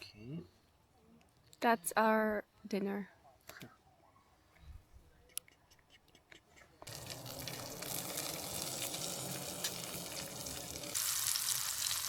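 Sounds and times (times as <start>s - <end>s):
food sizzling in a pan: 6.9s - 12.0s.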